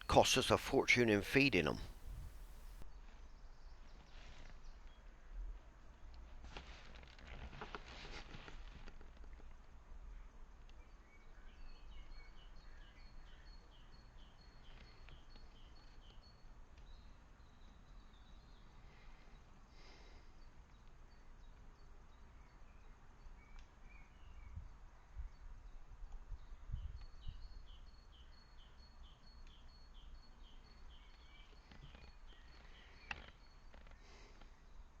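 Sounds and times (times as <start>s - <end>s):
songbird chirping: 0.0s - 2.8s.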